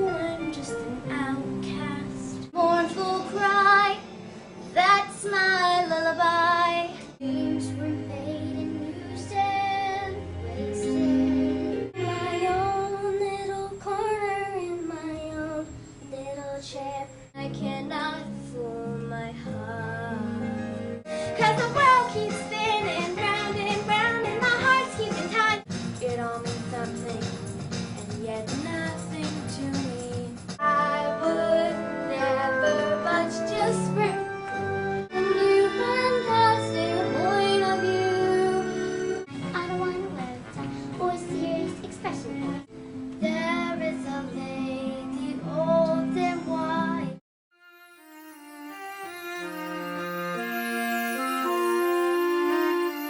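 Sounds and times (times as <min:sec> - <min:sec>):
backing music: 0:00.0 - 0:13.0, 0:20.3 - 0:42.7, 0:47.5 - 0:53.0.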